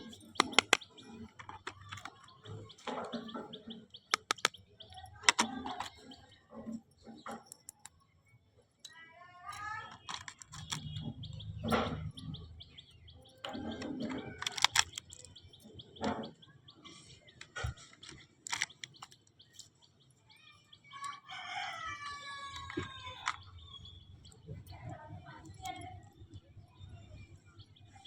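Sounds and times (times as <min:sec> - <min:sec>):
plastic items clicking: 0:00.0 - 0:06.3, 0:09.5 - 0:11.9, 0:13.3 - 0:16.2, 0:16.9 - 0:19.7, 0:22.5 - 0:25.9.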